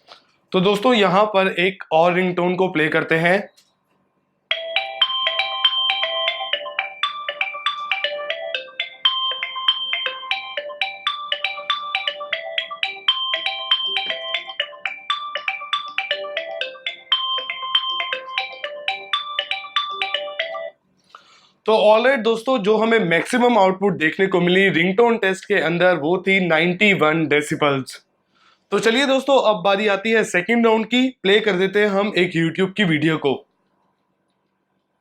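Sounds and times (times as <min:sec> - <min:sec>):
phone ringtone melody: 0:04.5 - 0:20.8.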